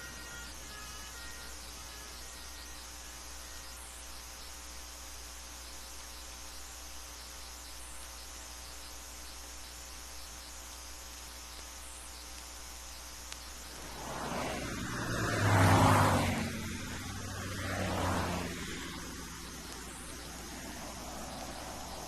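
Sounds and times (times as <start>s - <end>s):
motor vehicle passing by: 13.6s - 22.0s.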